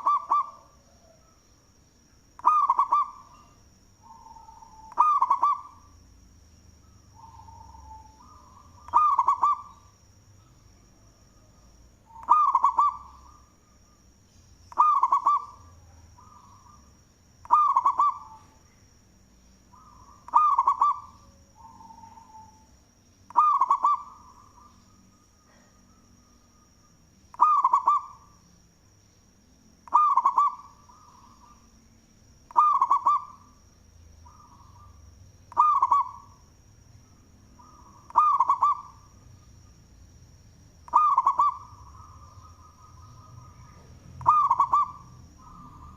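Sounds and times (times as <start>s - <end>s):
dove cooing: 0.0s - 1.4s, 2.4s - 3.4s, 4.0s - 5.8s, 7.1s - 9.9s, 12.1s - 13.4s, 14.7s - 18.6s, 19.7s - 22.7s, 23.3s - 24.8s, 27.3s - 28.3s, 29.9s - 31.6s, 32.5s - 33.5s, 34.2s - 36.4s, 37.6s - 39.1s, 40.9s - 45.9s
faint steady high tone: 0.0s - 45.9s.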